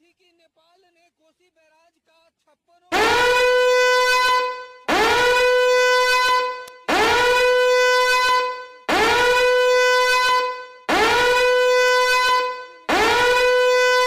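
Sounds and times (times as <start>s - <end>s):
alarm horn blasts: 2.9s - 14.0s.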